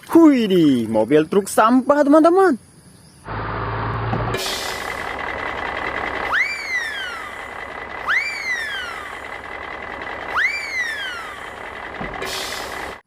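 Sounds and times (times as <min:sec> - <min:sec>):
truck engine running: 0:03.2 - 0:13.0
whooping warning alarm: 0:04.9 - 0:12.0.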